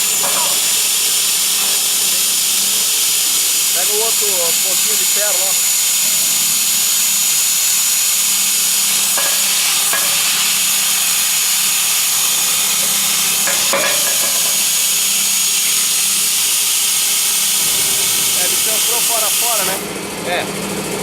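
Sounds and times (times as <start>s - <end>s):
cutting machine hiss and whine: 0.0s - 20.5s.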